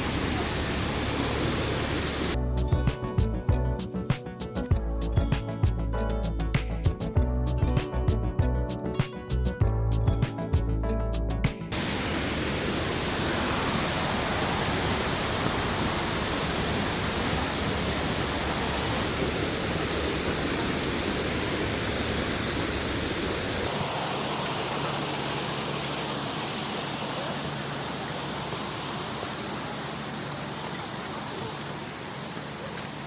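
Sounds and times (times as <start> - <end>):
waterfall roaring: 0.0 - 2.4, 11.8 - 33.0.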